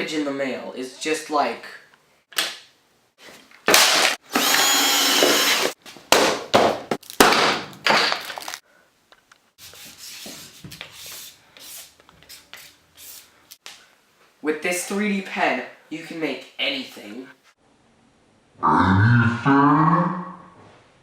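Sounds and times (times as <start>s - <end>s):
packaging rustling: 8.1s - 8.6s.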